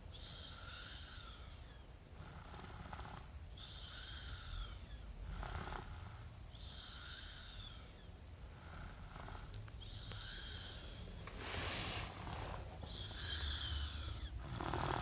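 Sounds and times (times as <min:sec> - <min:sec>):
person snoring: 0:13.2 - 0:15.0.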